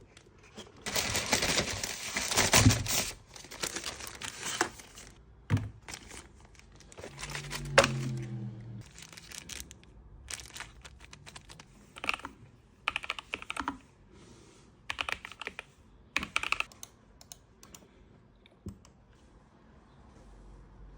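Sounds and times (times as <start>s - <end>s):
mechanical keyboard typing: 10.4s - 12.3s, 12.9s - 13.8s, 14.9s - 17.8s.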